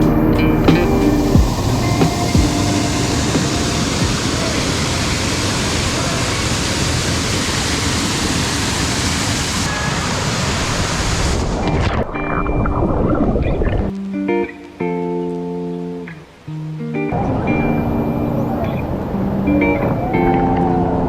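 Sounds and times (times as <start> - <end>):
guitar music: 0.0 - 5.1, 12.1 - 21.0
waterfall rushing water: 0.0 - 14.0.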